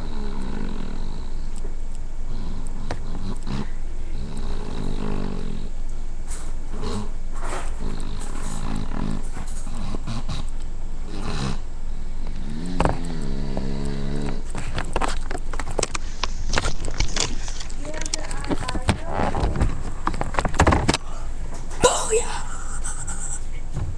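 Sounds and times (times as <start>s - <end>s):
woman snoring: 0.0s - 1.4s, 2.3s - 5.7s, 7.8s - 9.2s, 12.2s - 14.4s.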